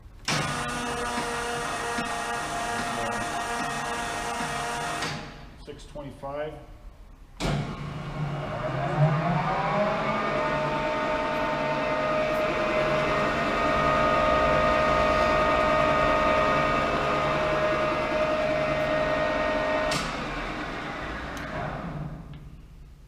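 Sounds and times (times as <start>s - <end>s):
lathe spindle with gear whine: 7.9s - 21.7s.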